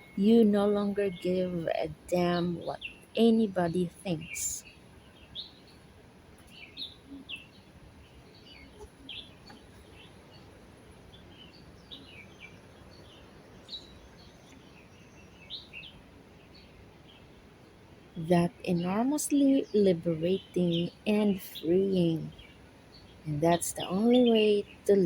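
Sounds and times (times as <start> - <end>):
birds chirping: 0.0 - 25.0
soft background hiss: 0.0 - 25.0.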